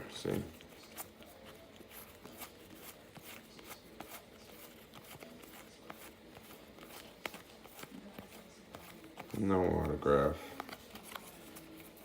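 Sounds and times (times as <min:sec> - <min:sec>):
cards clicking and rustling: 0:00.2 - 0:12.0.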